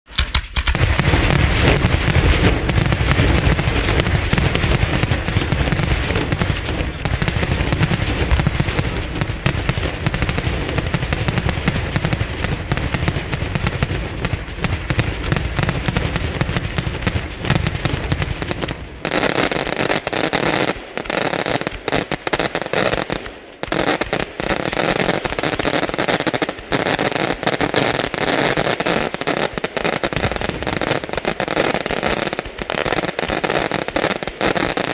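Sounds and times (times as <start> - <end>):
firecrackers banging: 0.1 - 34.9.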